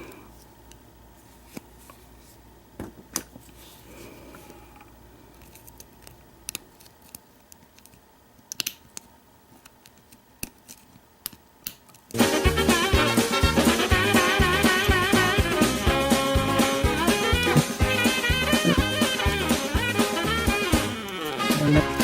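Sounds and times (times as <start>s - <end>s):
swing music: 12.2s - 22.0s.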